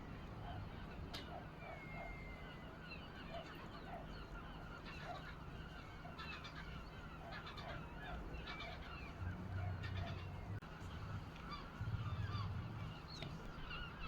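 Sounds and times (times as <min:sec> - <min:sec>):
birds calling: 0:00.0 - 0:14.0
steady low rumble: 0:08.2 - 0:14.0.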